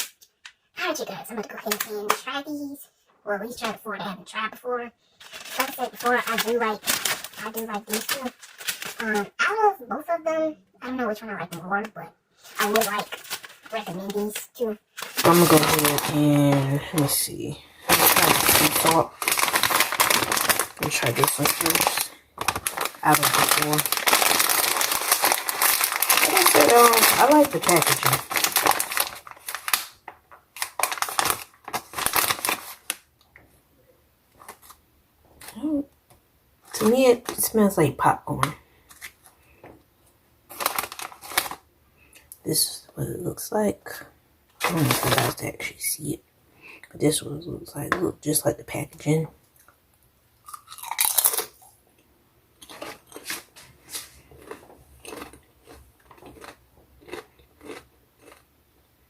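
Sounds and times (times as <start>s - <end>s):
chip bag crinkling: 1.4s - 2.2s, 5.2s - 9.4s, 12.4s - 33.1s, 34.4s - 34.8s, 36.6s - 39.4s, 40.5s - 42.4s, 44.6s - 45.8s, 50.4s - 51.8s, 52.6s - 58.5s.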